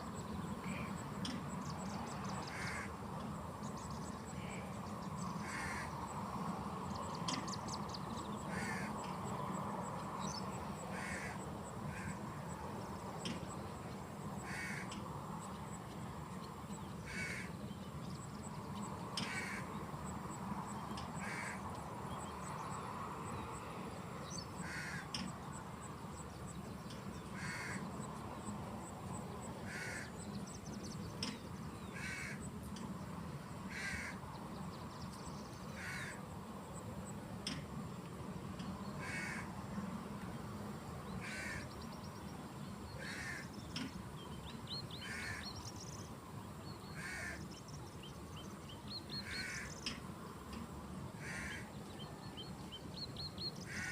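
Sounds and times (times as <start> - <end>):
steady background hiss: 0.0 - 53.9
birds giving harsh calls: 2.4 - 2.9, 5.4 - 6.0, 8.5 - 9.0, 10.9 - 12.2, 14.4 - 15.0, 17.1 - 17.5, 19.2 - 19.7, 21.2 - 21.6, 24.6 - 25.2, 27.4 - 27.8, 29.7 - 30.1, 31.2 - 32.5, 33.7 - 34.2, 35.8 - 36.2, 39.0 - 39.5, 41.2 - 41.7, 43.0 - 43.9, 45.0 - 45.6, 46.9 - 47.5, 49.2 - 50.0, 51.2 - 51.7, 53.6 - 53.9.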